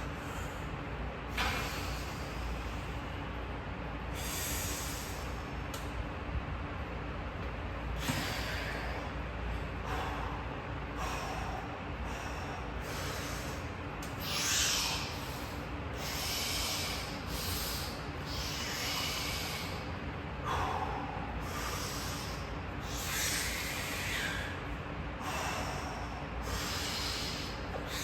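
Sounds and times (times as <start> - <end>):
person breathing hard: 4.1 - 5.5, 8.0 - 28.0.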